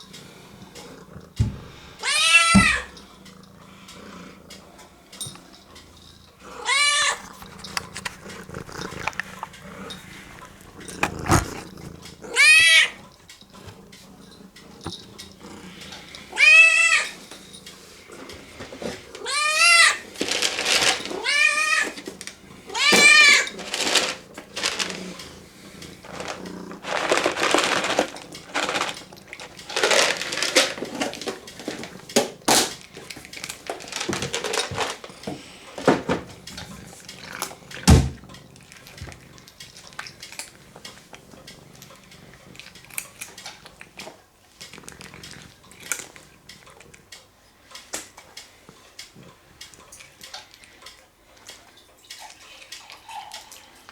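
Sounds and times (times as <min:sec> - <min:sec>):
cat meowing: 0:02.0 - 0:02.9, 0:06.6 - 0:07.2, 0:12.2 - 0:13.0, 0:16.3 - 0:17.2, 0:19.2 - 0:20.0, 0:21.1 - 0:22.0, 0:22.7 - 0:23.5
noisy rustling: 0:23.0 - 0:32.1.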